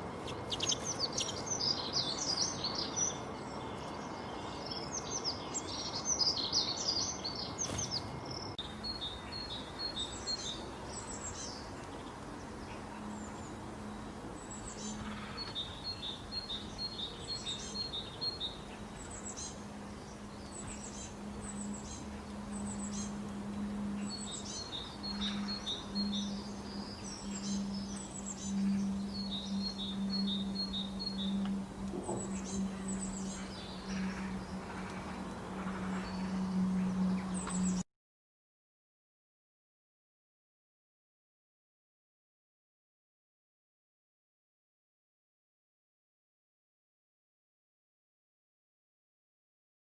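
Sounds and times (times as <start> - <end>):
low hum: 0.0 - 37.8
wild birds chirping: 0.0 - 37.8.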